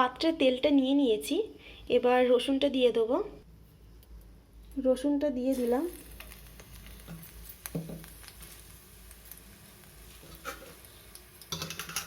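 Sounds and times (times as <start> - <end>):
garlic frying in oil: 5.4 - 12.0.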